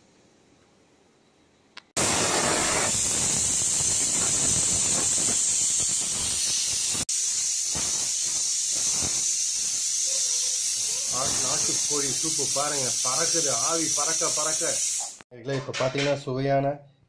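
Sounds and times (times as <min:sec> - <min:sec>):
steam hissing: 0:02.0 - 0:15.2.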